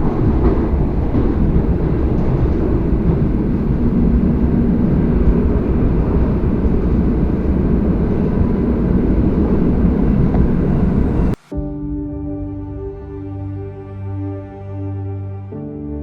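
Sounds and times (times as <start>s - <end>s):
train wheels rumbling on rails: 0.0s - 11.4s.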